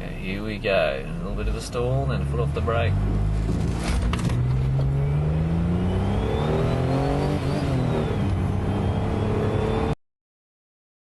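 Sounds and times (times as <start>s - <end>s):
car engine accelerating hard: 1.2s - 10.0s
supercharger whine: 2.2s - 10.0s.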